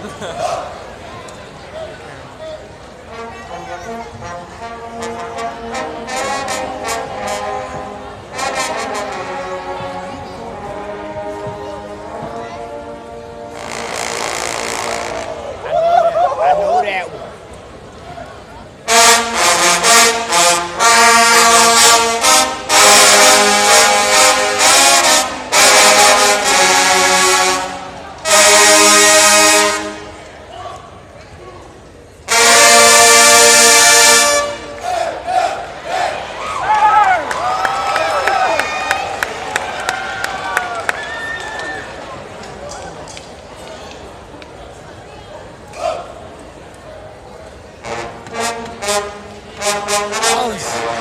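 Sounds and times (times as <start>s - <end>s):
trombones playing brass chords: 3.0s - 15.6s, 18.8s - 30.3s, 32.3s - 36.0s, 47.8s - 51.0s.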